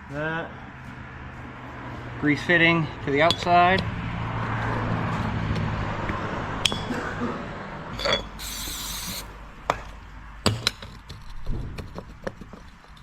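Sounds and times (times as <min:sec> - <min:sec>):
metal tools clinking and tapping: 0:03.2 - 0:03.5, 0:07.9 - 0:08.6
aerosol spray hiss: 0:08.4 - 0:09.3.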